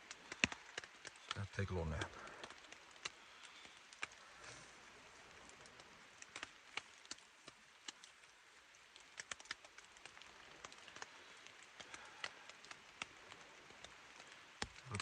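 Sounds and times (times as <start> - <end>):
water drops tapping on fabric: 0.0 - 4.2
faint steady hiss: 0.0 - 15.0.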